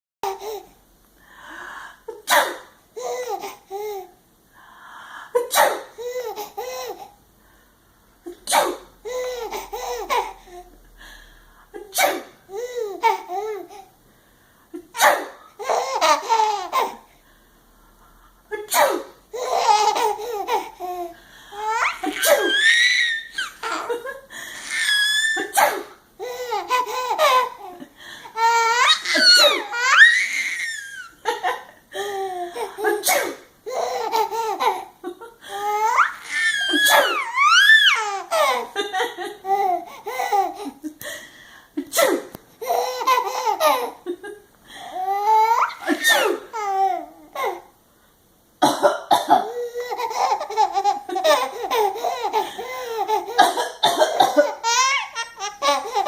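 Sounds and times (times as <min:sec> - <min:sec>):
baby laughing and squealing: 0:09.1 - 0:10.6, 0:14.9 - 0:17.0, 0:19.3 - 0:27.8, 0:28.4 - 0:31.3, 0:33.7 - 0:34.9, 0:35.6 - 0:38.8, 0:42.6 - 0:44.1, 0:45.0 - 0:47.7, 0:49.5 - 0:53.4, 0:54.4 - 0:56.0
adult fake coughs: 0:18.6 - 0:19.1, 0:25.5 - 0:26.0, 0:32.8 - 0:33.4, 0:48.6 - 0:49.6, 0:53.4 - 0:54.6.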